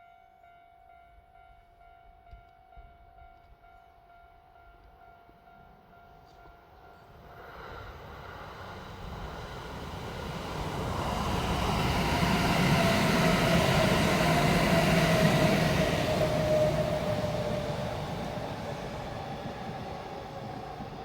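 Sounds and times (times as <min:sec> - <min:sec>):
steady train whine: 0:05.5 - 0:21.0
electric train rumble: 0:07.0 - 0:21.0.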